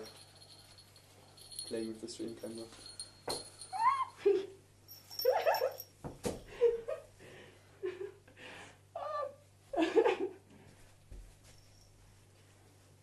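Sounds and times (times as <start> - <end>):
dog whining and yipping: 3.7 - 4.2.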